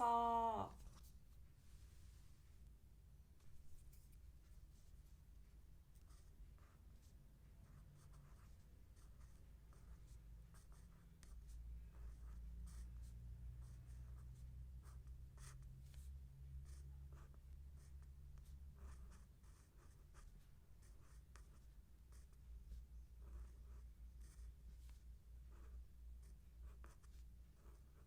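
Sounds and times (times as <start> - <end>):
pen scratching on paper: 5.9 - 28.0.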